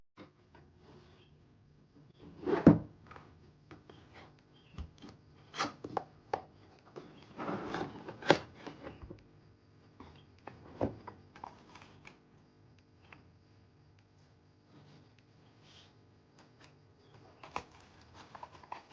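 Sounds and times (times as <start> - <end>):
cardboard scraping: 7.0 - 9.0, 17.4 - 18.9
cardboard rubbing and sliding: 7.2 - 9.0.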